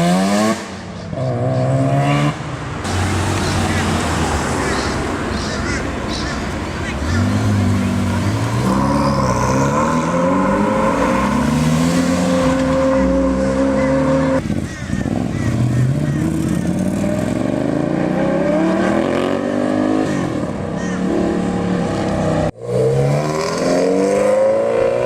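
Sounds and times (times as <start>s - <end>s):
car engine revving: 6.9s - 14.4s, 15.0s - 25.0s.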